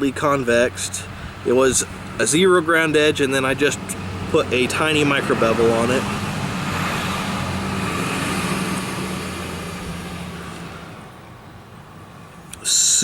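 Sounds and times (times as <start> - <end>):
vehicle passing by: 0.9 - 11.2.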